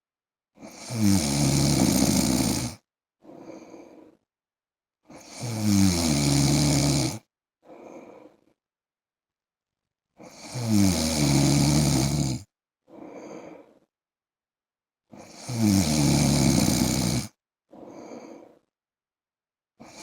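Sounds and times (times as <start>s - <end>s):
man snoring: 0.6s - 4.1s, 5.1s - 8.4s, 10.2s - 13.6s, 15.1s - 18.5s, 19.8s - 20.0s
quiet breath: 2.6s - 4.4s, 7.6s - 8.7s, 12.8s - 14.0s, 17.7s - 18.8s.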